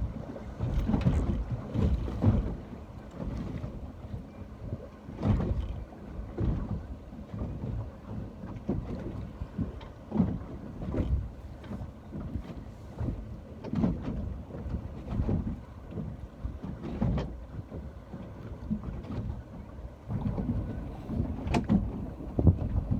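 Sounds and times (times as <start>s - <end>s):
wind buffeting microphone: 0.0s - 7.8s, 8.7s - 22.9s
ocean wash: 0.0s - 22.9s.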